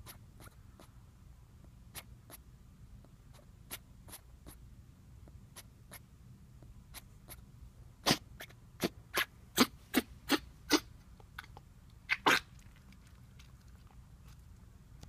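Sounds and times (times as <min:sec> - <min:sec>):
puppy coughing: 0:08.0 - 0:11.0, 0:12.1 - 0:12.5.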